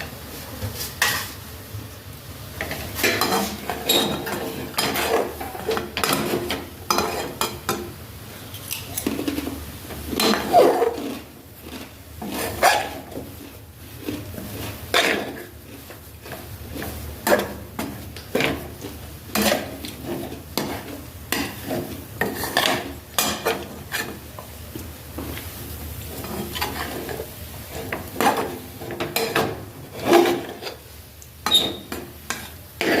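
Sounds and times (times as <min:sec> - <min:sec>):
spoon scraping metal pot: 0:02.6 - 0:07.6, 0:08.6 - 0:13.2, 0:18.4 - 0:24.2, 0:26.2 - 0:30.8, 0:31.4 - 0:33.0.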